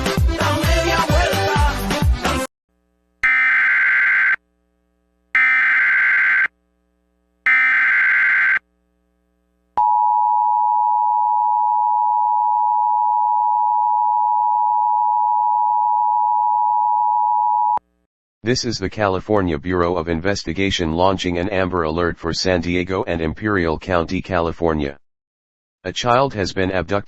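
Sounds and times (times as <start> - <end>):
shrill digital data bursts: 7.5 - 8.6.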